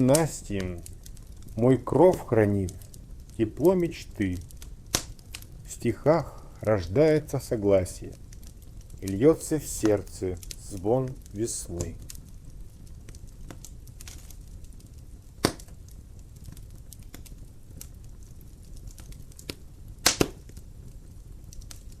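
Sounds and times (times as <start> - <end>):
low steady fire rustle: 0.0 - 22.0
wood fire crackling: 0.0 - 22.0.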